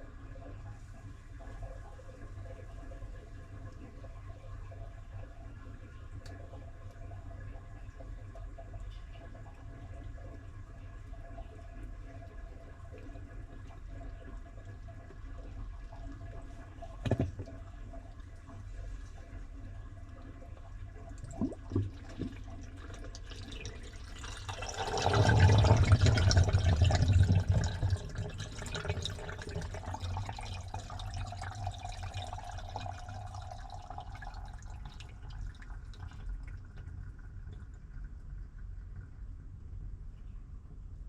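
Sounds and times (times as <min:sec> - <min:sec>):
washing machine water sloshing: 0:21.1 - 0:36.8.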